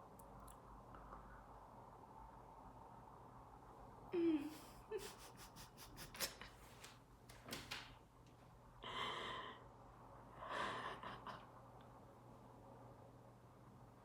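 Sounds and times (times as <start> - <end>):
woman crying quietly: 4.1 - 6.4.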